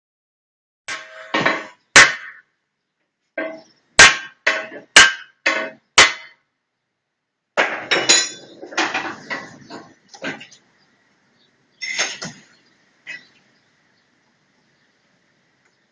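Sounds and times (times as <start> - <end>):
hammer striking metal: 0.9 - 2.4, 3.4 - 6.4.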